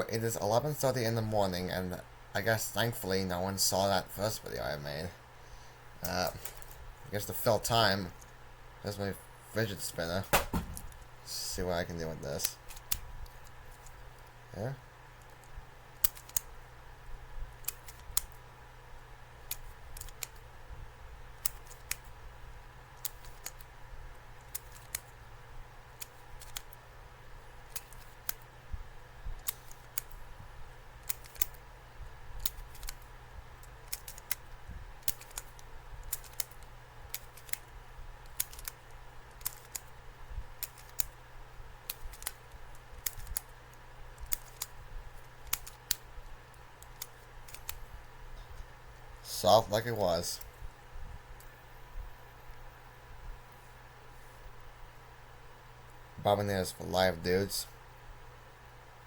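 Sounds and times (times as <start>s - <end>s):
faint steady hum: 0.0s - 59.0s
fidget spinner clicking: 15.2s - 16.6s, 23.0s - 25.2s, 25.9s - 26.8s, 27.6s - 28.5s, 29.2s - 30.2s, 31.0s - 31.7s, 32.3s - 41.2s, 41.8s - 46.1s, 46.8s - 47.8s.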